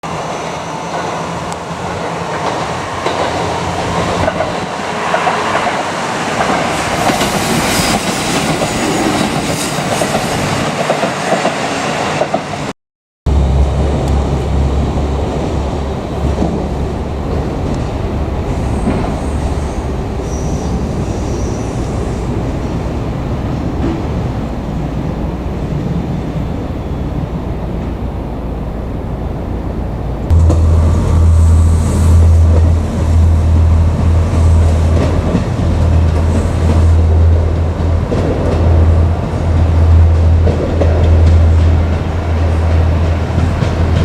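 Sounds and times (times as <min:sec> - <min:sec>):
train rumble: 0:00.0 - 0:12.7, 0:13.3 - 0:44.0
wheel squeal: 0:18.5 - 0:21.8.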